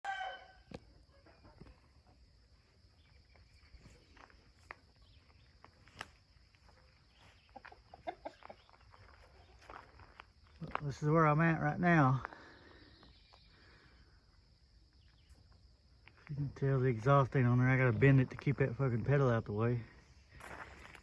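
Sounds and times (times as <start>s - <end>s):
faint chickens clucking: 0.0s - 10.7s.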